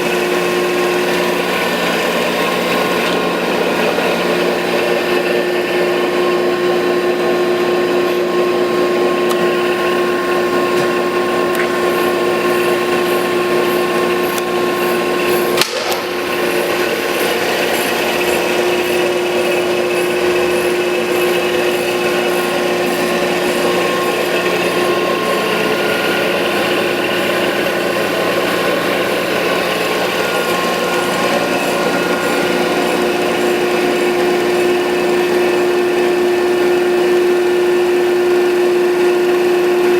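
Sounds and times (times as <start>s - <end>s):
grinder machine humming: 0.0s - 39.9s
sharp click: 15.6s - 16.1s.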